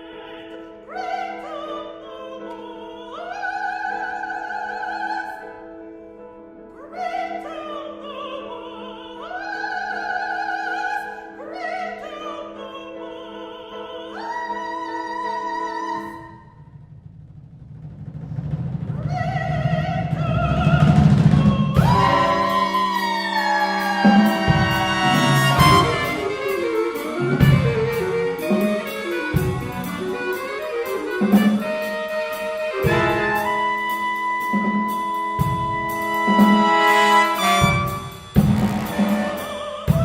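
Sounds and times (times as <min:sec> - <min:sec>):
solo singer with vibrato: 0:00.0 - 0:05.6, 0:06.8 - 0:16.4, 0:19.0 - 0:34.5
low rumbling drum roll: 0:16.6 - 0:23.1, 0:37.6 - 0:40.0
chamber ensemble playing: 0:21.8 - 0:40.0.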